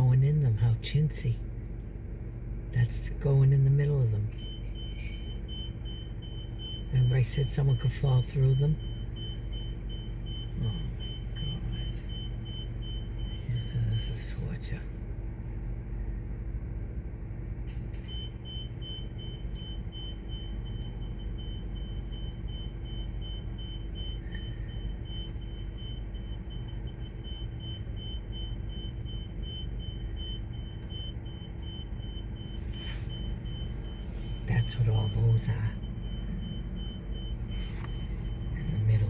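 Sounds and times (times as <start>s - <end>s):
low engine rumble: 0.0s - 39.0s
rapid high electronic beeping: 4.4s - 14.1s, 18.1s - 39.0s.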